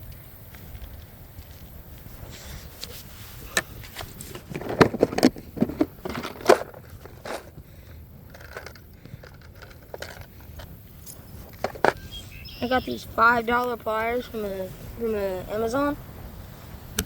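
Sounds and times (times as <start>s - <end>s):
fishing tackle clicking and knocking: 4.5s - 12.1s.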